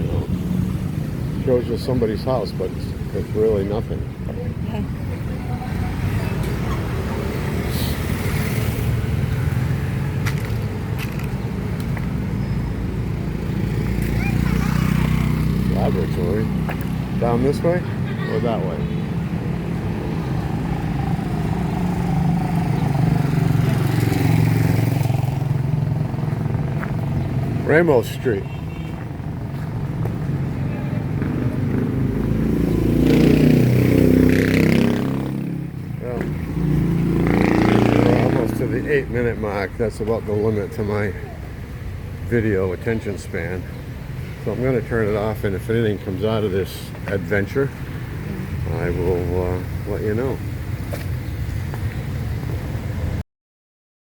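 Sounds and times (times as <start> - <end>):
traffic rumble: 0.0 - 53.2
motorcycle engine passing by: 13.2 - 18.4, 19.5 - 27.8, 28.9 - 39.0.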